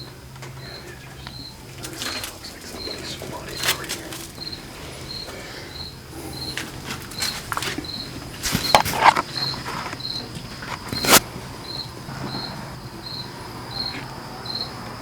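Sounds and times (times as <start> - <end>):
cricket chirping: 0.0 - 15.0
debris knocks and scrapes: 6.6 - 10.0.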